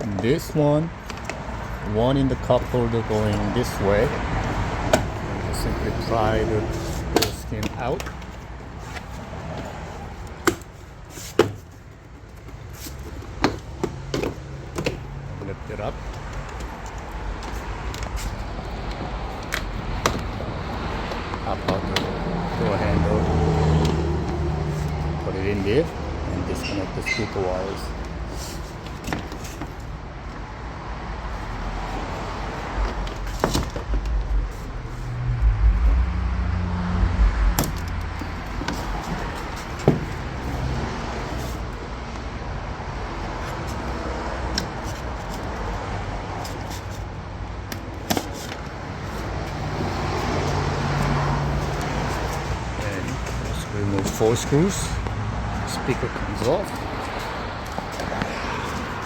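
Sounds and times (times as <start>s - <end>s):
low vehicle rumble: 27.7s - 59.0s
low hum: 32.7s - 38.6s.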